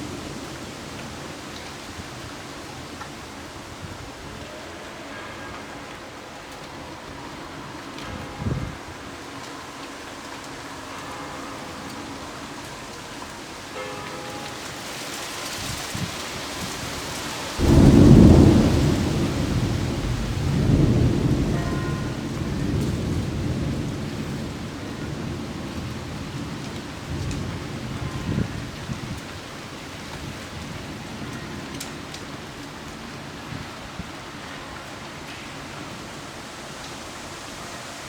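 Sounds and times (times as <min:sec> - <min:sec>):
heavy rain falling: 0:00.0 - 0:38.0
thunder rumbling: 0:15.8 - 0:34.2.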